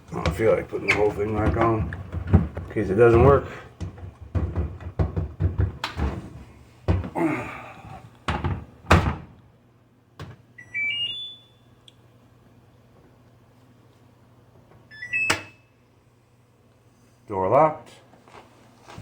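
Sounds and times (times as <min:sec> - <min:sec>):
washer clunks and knocks: 0:00.1 - 0:07.2, 0:08.3 - 0:09.4.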